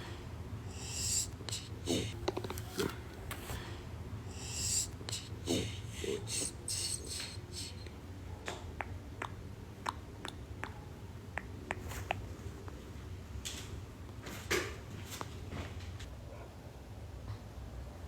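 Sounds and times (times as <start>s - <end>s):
hissy bursts: 0.0s - 7.8s
low steady hum: 0.0s - 18.0s
stomach gurgling pops and squeaks: 1.0s - 3.5s.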